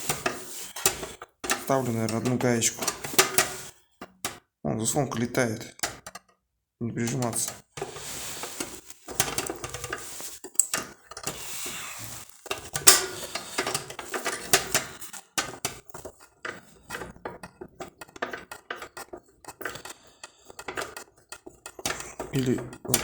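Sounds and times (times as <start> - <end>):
metal nuts clinking and rattling: 7.4 - 19.9
metal clank: 12.5 - 15.6.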